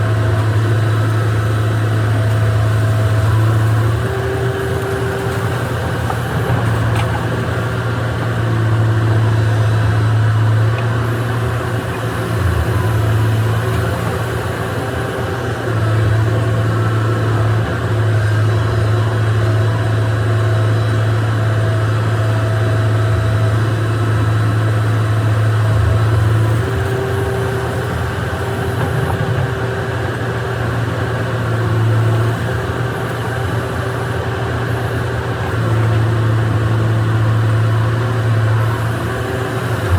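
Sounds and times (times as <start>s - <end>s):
excavator diesel engine humming: 0.0s - 39.9s.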